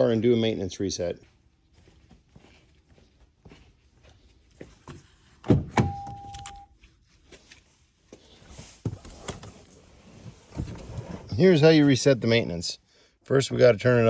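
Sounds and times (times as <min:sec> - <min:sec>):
car door opening thunk: 0:05.4 - 0:06.2.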